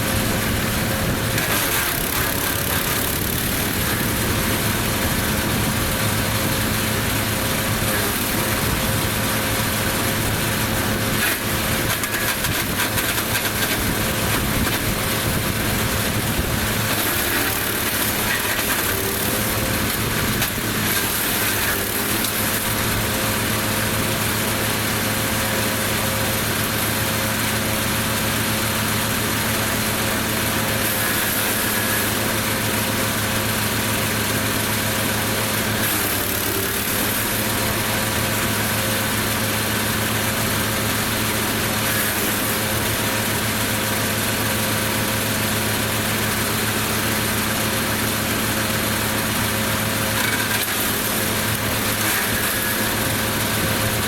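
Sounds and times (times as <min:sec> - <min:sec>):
wood chipper engine hum: 0:00.0 - 0:54.0
branches shredding: 0:00.1 - 0:23.6, 0:35.6 - 0:38.0, 0:50.0 - 0:54.0.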